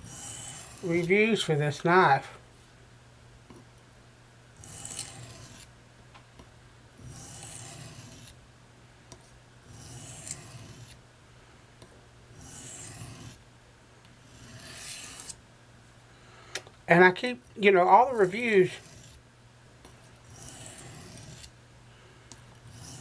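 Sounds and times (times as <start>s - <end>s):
knife blade scraping: 0.0s - 1.2s, 4.6s - 5.7s, 7.0s - 8.4s, 9.7s - 11.0s, 12.4s - 13.4s, 14.3s - 15.4s, 18.0s - 19.2s, 20.3s - 21.5s, 22.7s - 23.0s
steady low hum: 0.0s - 23.0s.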